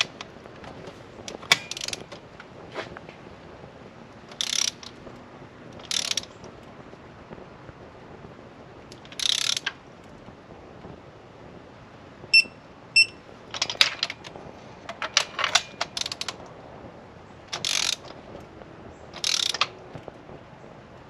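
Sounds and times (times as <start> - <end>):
ratchet wrench clicking: 1.3 - 2.0, 4.3 - 5.0, 5.8 - 6.3, 9.0 - 9.7, 14.9 - 16.4, 17.5 - 18.1, 19.2 - 19.7
short metallic pings: 12.4 - 13.2.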